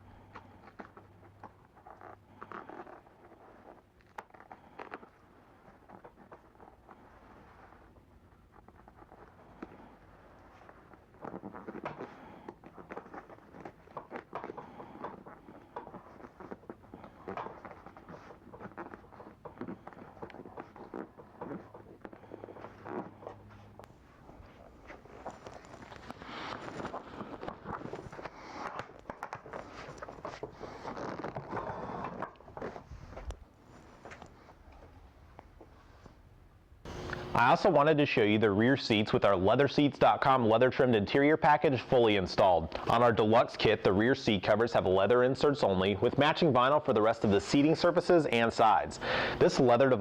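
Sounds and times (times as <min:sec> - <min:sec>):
leather rustling: 0:00.0 - 0:36.3.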